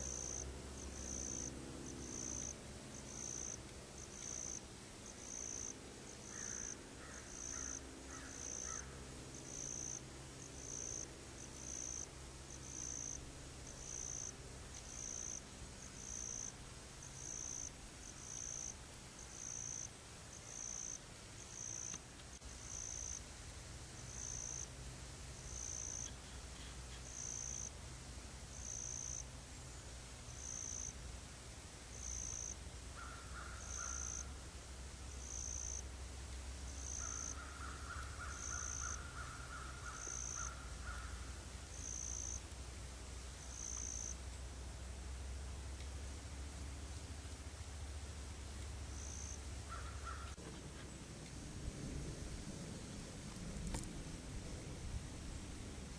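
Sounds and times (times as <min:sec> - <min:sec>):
low steady hum: 0:00.0 - 0:55.9
insect calling in pulses: 0:01.0 - 0:13.2, 0:13.8 - 0:23.2, 0:24.1 - 0:24.7, 0:25.4 - 0:27.7, 0:28.5 - 0:29.3, 0:30.3 - 0:31.0, 0:31.9 - 0:34.4, 0:35.2 - 0:35.8, 0:36.7 - 0:42.4, 0:43.5 - 0:44.2, 0:48.9 - 0:51.0.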